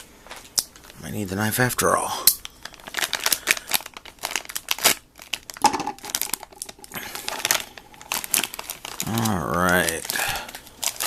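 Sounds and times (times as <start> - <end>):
plastic wrapper crinkling: 0.3 - 1.1, 2.4 - 11.0
wrapper tearing snaps: 2.7 - 11.0.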